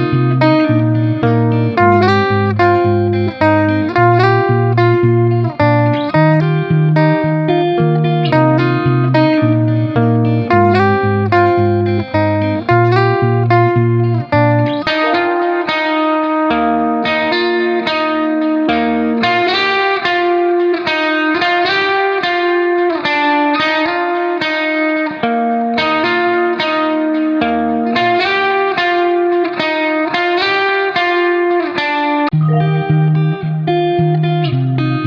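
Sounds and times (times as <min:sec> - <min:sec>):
bass line: 0:00.0 - 0:15.5, 0:32.3 - 0:33.6
plucked guitar piece: 0:00.0 - 0:35.0.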